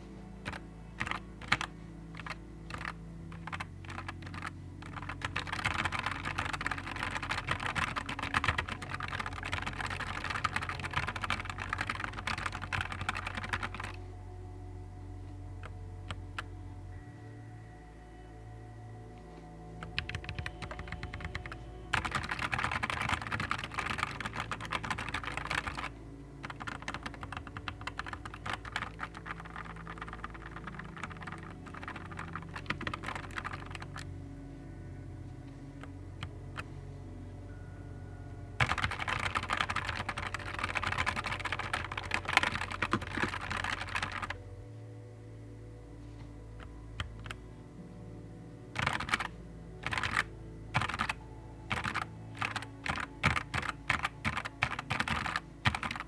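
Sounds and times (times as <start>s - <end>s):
soft background music: 0.0s - 56.0s
mechanical keyboard typing: 0.4s - 14.0s, 19.8s - 34.1s, 38.6s - 44.4s, 46.6s - 47.4s, 48.8s - 56.0s.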